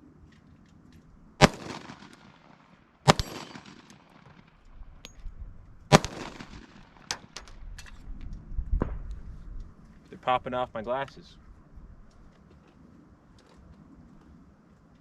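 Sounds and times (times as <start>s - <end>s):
pistol shots with echo: 1.4s - 4.6s, 5.9s - 7.4s.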